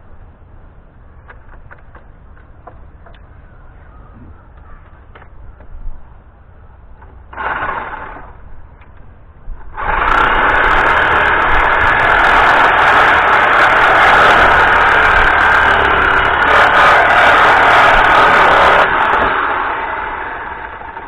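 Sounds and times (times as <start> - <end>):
power tool running: 7.3 - 8.4, 9.7 - 21.0.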